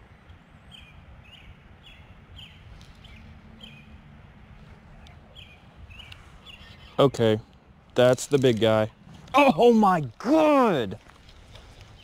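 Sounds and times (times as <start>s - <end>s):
small bird chirping: 5.0s - 7.0s.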